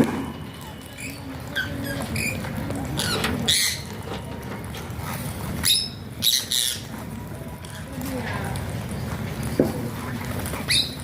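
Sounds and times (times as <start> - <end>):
parakeet chirping and squawking: 3.0 - 4.0, 5.6 - 6.9.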